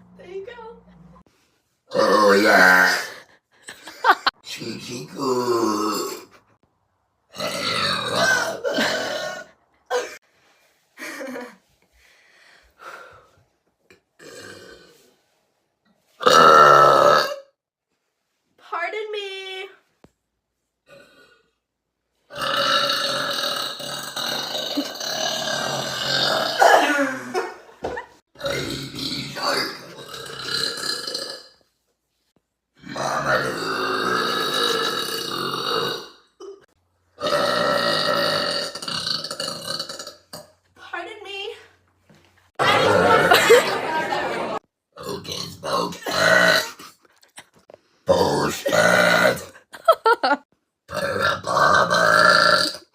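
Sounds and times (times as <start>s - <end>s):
girl burping: 1.9s - 3.2s, 5.2s - 6.3s, 7.4s - 10.2s, 16.2s - 17.5s, 22.3s - 27.6s, 33.4s - 40.5s, 45.0s - 47.0s, 48.1s - 52.9s.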